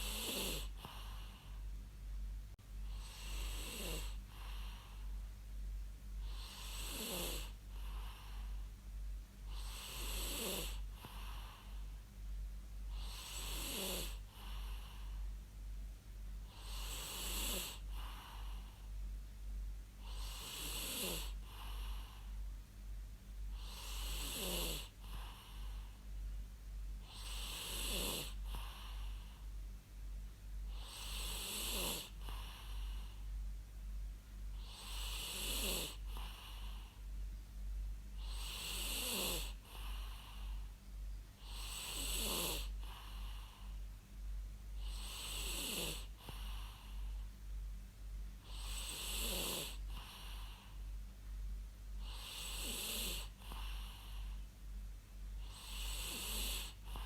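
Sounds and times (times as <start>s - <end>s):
person snoring: 0.0s - 1.4s, 2.9s - 5.0s, 6.2s - 8.5s, 9.5s - 11.8s, 12.9s - 15.0s, 16.5s - 18.6s, 20.0s - 22.2s, 23.6s - 25.8s, 27.1s - 29.2s, 30.7s - 33.2s, 34.6s - 36.9s, 38.2s - 40.6s, 41.4s - 43.7s, 44.8s - 47.0s, 48.4s - 50.7s, 52.0s - 54.3s, 55.4s - 57.0s.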